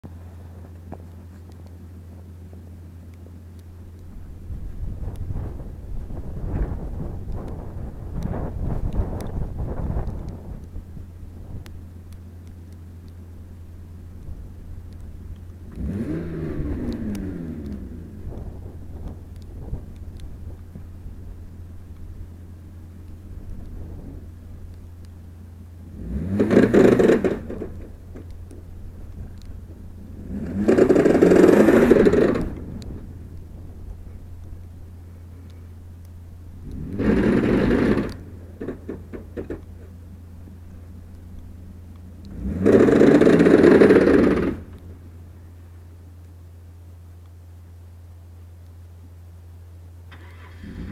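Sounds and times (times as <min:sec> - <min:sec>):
drive chain hum: 0:00.0 - 0:50.9
rising and falling whine: 0:00.0 - 0:50.9
light clicks: 0:00.7 - 0:02.3, 0:11.6 - 0:15.9, 0:27.4 - 0:29.8
loud crunching surge: 0:25.9 - 0:35.6, 0:36.4 - 0:41.6, 0:42.2 - 0:45.0.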